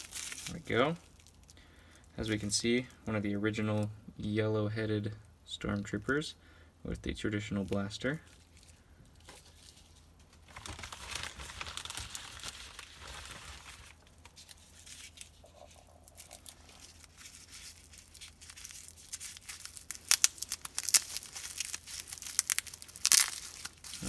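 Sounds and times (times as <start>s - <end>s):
bubble wrap crinkling: 0.0s - 3.9s, 7.6s - 24.0s
sticky tape peeled and torn: 16.0s - 24.0s.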